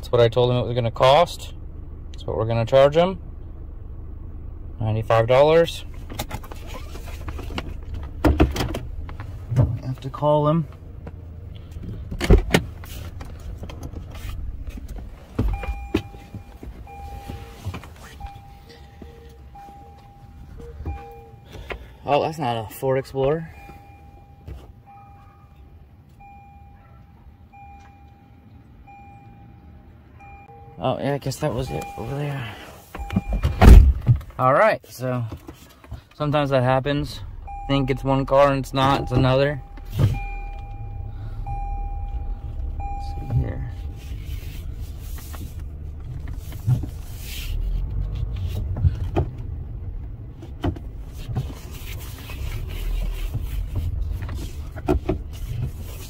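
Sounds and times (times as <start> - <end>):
engine and road rumble: 0.0 - 56.0
car warning chime beeping: 15.4 - 33.8, 36.8 - 44.8
low rumble: 36.6 - 47.1.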